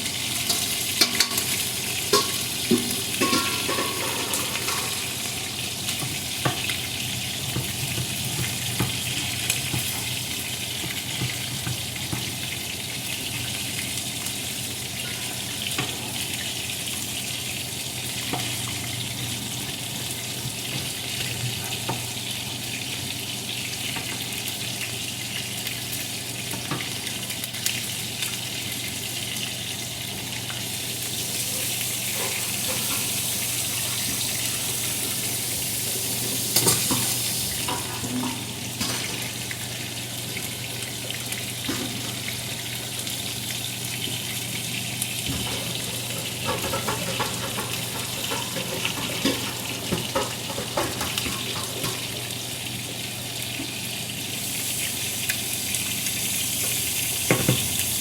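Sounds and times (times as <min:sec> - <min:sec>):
chicken frying in oil: 0:00.0 - 0:58.0.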